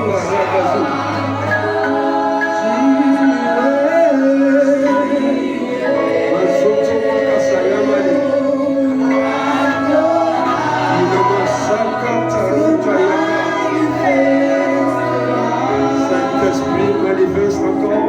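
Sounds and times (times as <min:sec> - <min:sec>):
sustained accompaniment: 0:00.0 - 0:18.0
voices singing held notes: 0:00.0 - 0:18.0.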